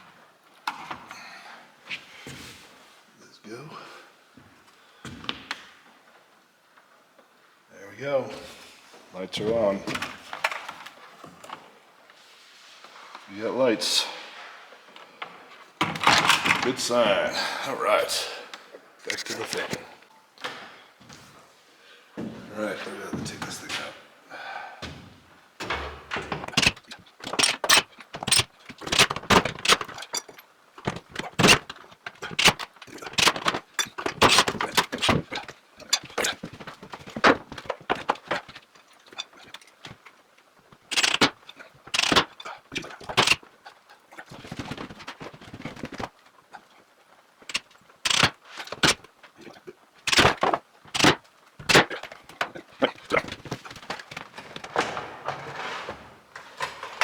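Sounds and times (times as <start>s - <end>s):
hardware rattling and scraping: 15.8s - 17.2s, 25.6s - 57.0s.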